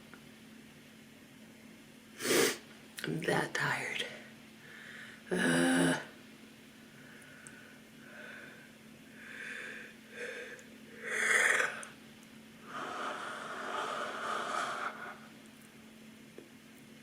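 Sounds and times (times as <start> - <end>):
woman yawning: 5.3 - 6.1
short breaths: 12.6 - 15.3.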